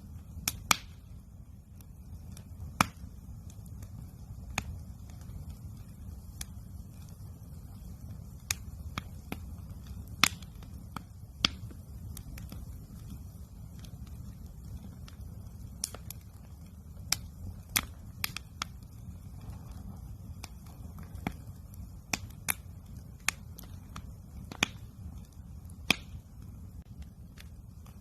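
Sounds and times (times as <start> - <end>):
campfire crackling and popping: 0.0 - 28.0
low rumble of burning: 0.0 - 28.0.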